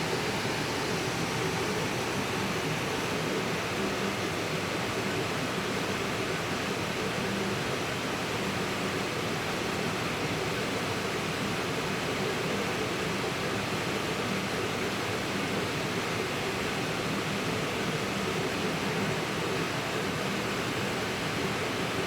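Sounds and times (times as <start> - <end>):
faint hum: 0.0 - 5.9
electric fan blowing air: 0.0 - 22.0.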